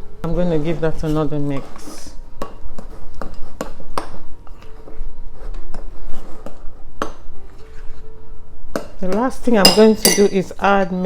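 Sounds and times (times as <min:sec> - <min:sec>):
spoon clinking against bowl: 0:09.6 - 0:10.4.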